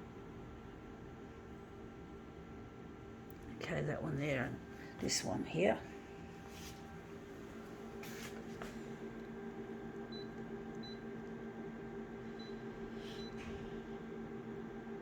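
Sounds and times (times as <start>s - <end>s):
low electrical hum: 0.0s - 15.0s
soft rustles: 6.4s - 8.8s.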